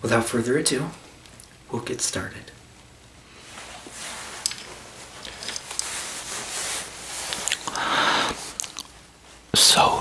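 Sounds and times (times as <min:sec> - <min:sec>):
rustling and crinkling: 0:02.8 - 0:07.8.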